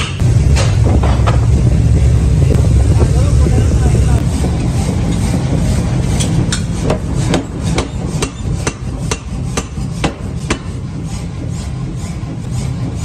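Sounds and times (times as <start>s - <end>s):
hammer striking metal on anvil: 0.0s - 1.5s, 6.1s - 11.0s
low rumble: 0.2s - 9.5s.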